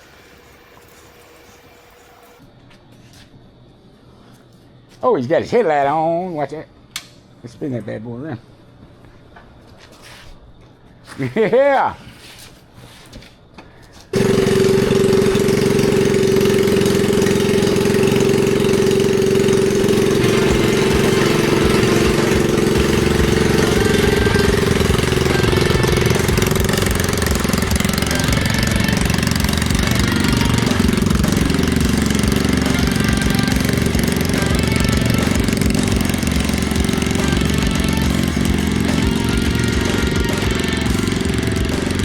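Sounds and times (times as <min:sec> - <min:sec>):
mini bike engine running hard: 0:14.2 - 0:42.0.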